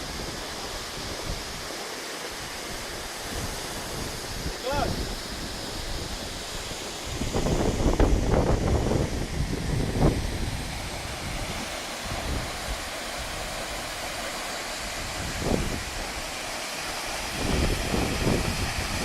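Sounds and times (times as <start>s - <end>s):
waterfall rushing: 0.0s - 19.0s
wind buffeting microphone: 2.7s - 13.6s, 14.9s - 16.2s, 17.3s - 19.0s.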